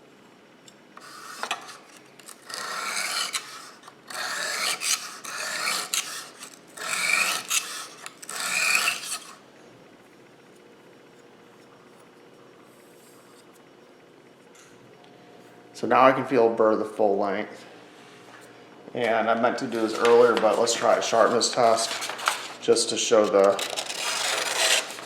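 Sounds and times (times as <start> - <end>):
knife scraping on sharpening stone: 2.5 - 9.4.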